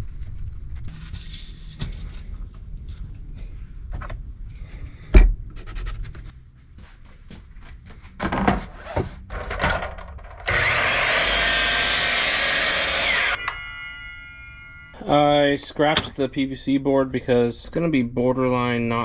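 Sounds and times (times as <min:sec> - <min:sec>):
power tool cutting wood: 0:10.4 - 0:13.9.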